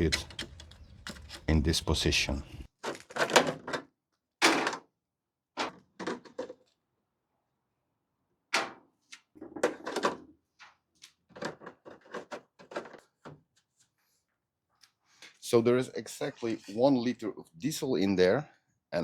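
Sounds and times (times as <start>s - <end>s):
objects knocking and clunking: 0.0s - 1.6s, 2.7s - 4.9s, 5.6s - 6.7s, 8.6s - 13.5s.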